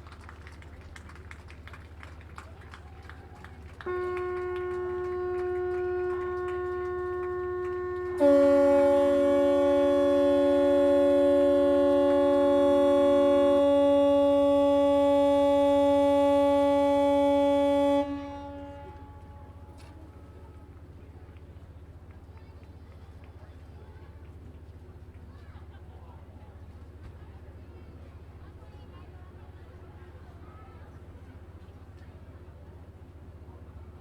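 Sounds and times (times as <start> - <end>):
lower louder horn blast: 3.8 - 20.9
high horn blast: 3.8 - 21.0.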